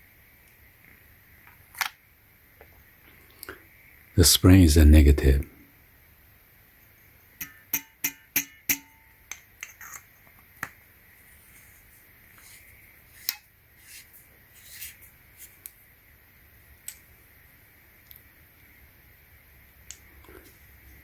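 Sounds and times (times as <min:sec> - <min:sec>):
slight metallic ring: 0:07.4 - 0:10.0.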